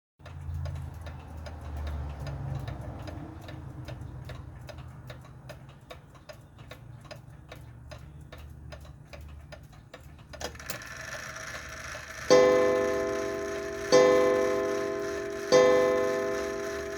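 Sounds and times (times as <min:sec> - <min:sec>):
clock ticking: 0:00.2 - 0:10.4, 0:12.0 - 0:16.9
louder clock click: 0:10.4 - 0:16.9.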